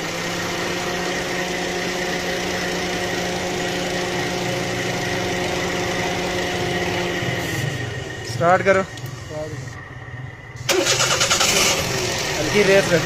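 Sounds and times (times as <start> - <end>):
engine idling: 0.0 - 13.0
high whine: 3.4 - 11.0.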